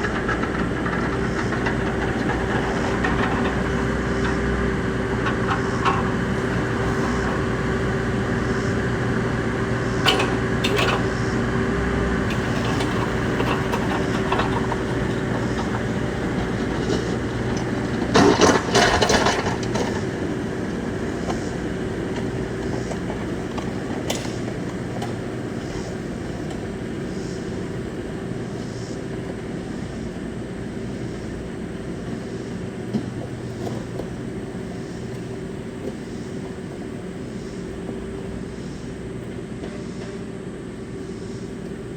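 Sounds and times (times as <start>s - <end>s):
excavator diesel engine running: 0.0s - 41.9s
metal knocks and clanks: 10.0s - 11.4s.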